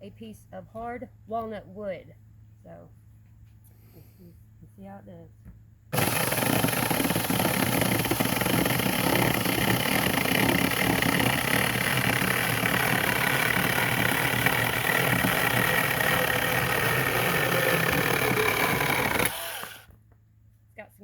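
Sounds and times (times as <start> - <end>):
electric chainsaw cutting wood: 6.0 - 19.9.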